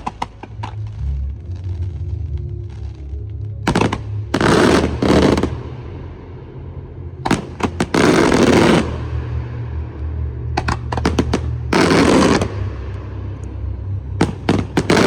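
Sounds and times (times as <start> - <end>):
fireworks cracking and banging: 0.0 - 3.0, 3.7 - 5.6, 7.2 - 9.4, 10.5 - 13.0, 14.2 - 15.0
steady low hum: 0.0 - 15.0.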